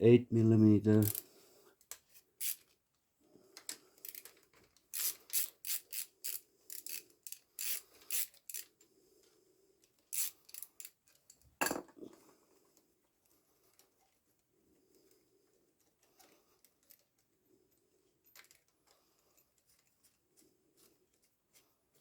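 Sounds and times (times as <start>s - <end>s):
ratchet wrench clicking: 1.0s - 1.2s, 2.4s - 2.6s, 4.0s - 4.3s, 4.9s - 8.7s, 10.1s - 11.0s.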